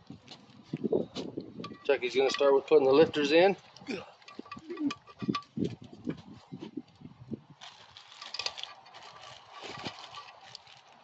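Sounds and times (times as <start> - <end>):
metal engine parts clicking: 1.6 - 5.6, 8.0 - 10.7.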